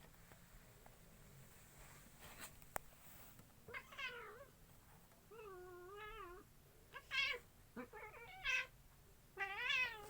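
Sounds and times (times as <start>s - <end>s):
faint scratchy rustle: 0.0s - 5.3s.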